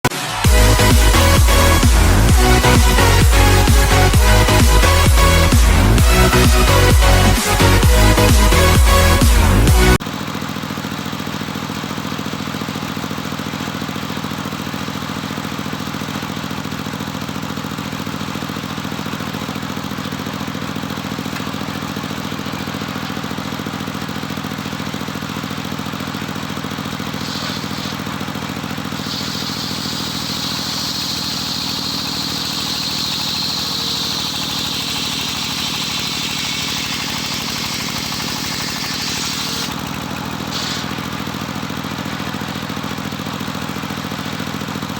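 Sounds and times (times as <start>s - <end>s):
saw blade whine cutting wood: 0.0s - 10.0s, 14.5s - 16.8s, 26.9s - 43.2s
sawmill machine hum: 0.0s - 44.9s.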